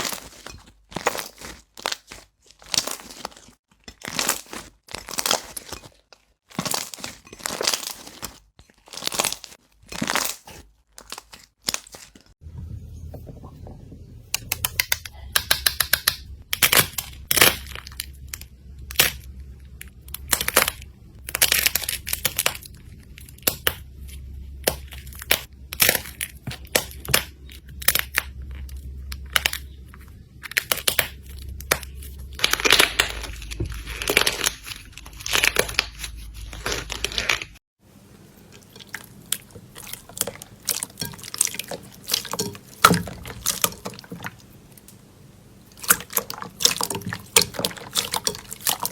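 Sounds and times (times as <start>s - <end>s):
slime crackling and popping: 14.4s - 23.9s, 24.6s - 37.6s.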